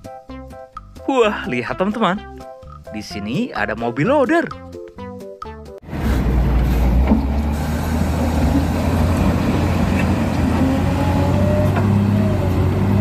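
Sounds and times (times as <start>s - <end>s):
heavy vehicle engine rumbling: 5.8s - 13.0s.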